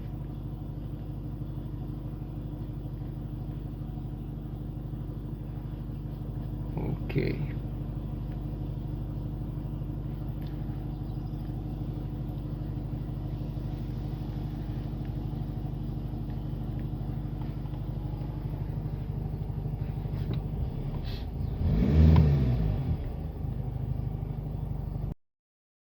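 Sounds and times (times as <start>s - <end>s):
car engine idling: 0.0s - 25.2s
engine revving: 18.2s - 24.4s.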